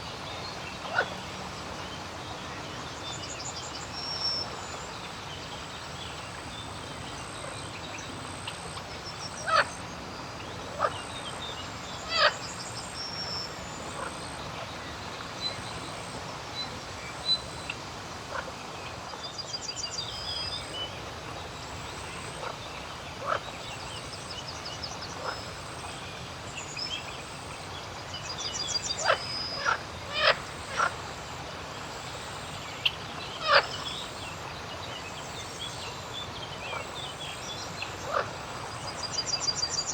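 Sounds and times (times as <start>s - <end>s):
outdoor background hiss: 0.0s - 39.9s
frogs croaking: 7.2s - 11.1s, 11.7s - 18.5s, 21.6s - 26.2s, 27.2s - 39.9s.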